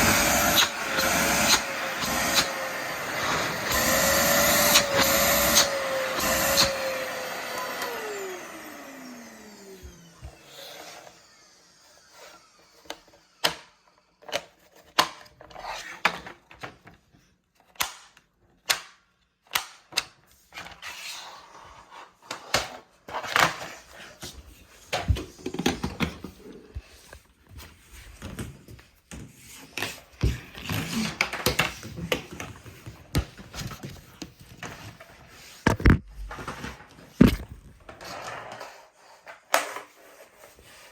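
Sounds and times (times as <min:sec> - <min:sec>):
vacuum cleaner motor spinning down: 0:00.0 - 0:13.4.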